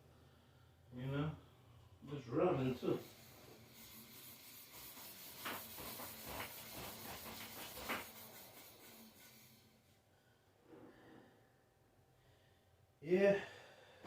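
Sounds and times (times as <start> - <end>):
e-bike part rubbing and scraping: 2.6 - 9.8.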